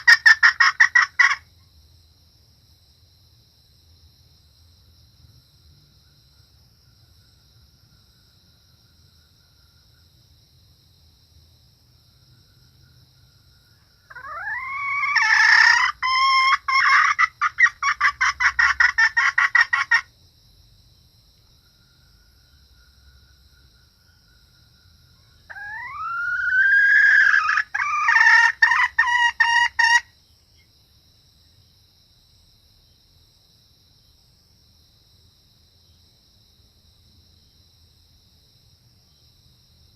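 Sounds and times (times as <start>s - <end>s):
junglefowl hen calling: 0.0s - 1.5s, 14.1s - 20.1s, 25.4s - 30.1s
high insect drone: 0.0s - 39.9s.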